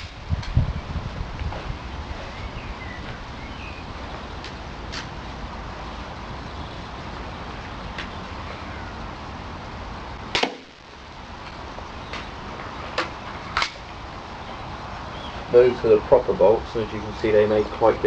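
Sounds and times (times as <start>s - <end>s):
crossbow shooting sharp snaps: 10.3s - 10.7s, 13.6s - 13.9s.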